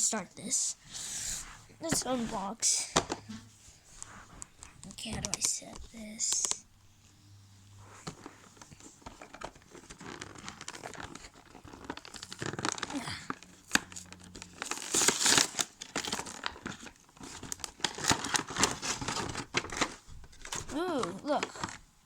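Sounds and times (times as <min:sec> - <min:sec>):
packaging crinkling and tearing: 0:08.0 - 0:21.8.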